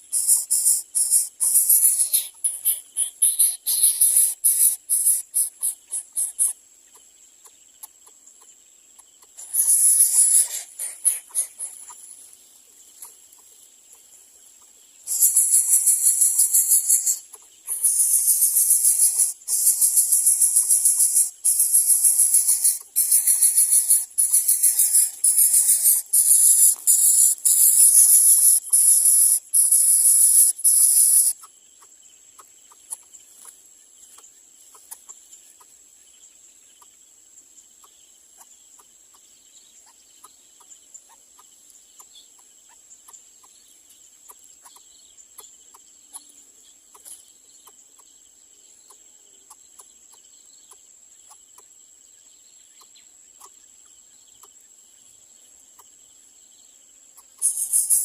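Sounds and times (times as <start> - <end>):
nestlings hissing: 0.0 - 6.5, 9.4 - 12.0, 15.1 - 31.4, 57.4 - 58.0
high insect buzz: 0.0 - 8.4, 9.0 - 31.6, 53.3 - 58.0
faint ticks: 0.2 - 35.8.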